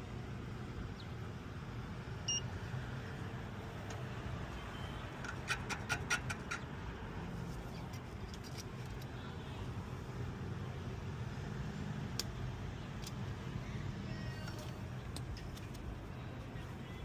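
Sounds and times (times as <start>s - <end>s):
rumble of machinery and traffic: 0.0s - 17.0s.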